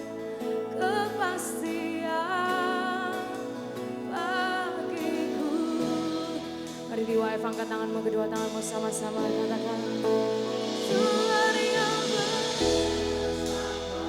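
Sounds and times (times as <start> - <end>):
band sustained chords: 9.5 - 14.0.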